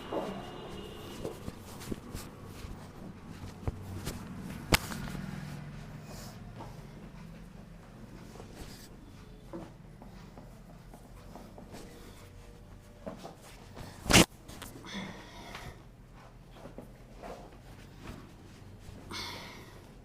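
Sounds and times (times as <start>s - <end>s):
rustling and handling: 0.0s - 14.8s
back cracking: 1.1s - 5.4s, 13.9s - 14.8s.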